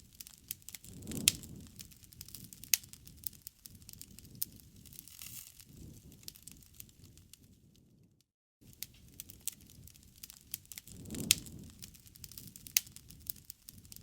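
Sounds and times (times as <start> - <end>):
sharp snaps and pops: 0.0 - 14.0
wood fire crackling: 0.0 - 14.0
low rushing flare-up: 10.8 - 13.9.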